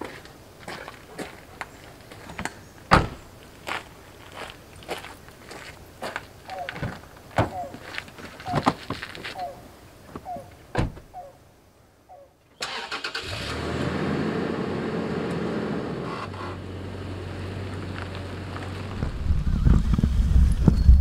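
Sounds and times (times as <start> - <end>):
car engine starting and running: 12.6 - 21.0.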